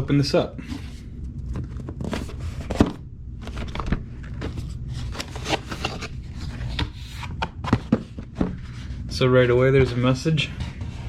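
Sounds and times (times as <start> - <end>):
box and packaging rustling: 0.6 - 9.0.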